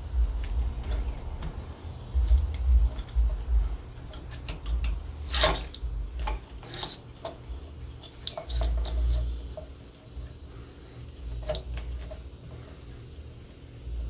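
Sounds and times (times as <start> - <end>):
low rumble: 0.0 - 6.6
metal scrape: 0.0 - 9.6.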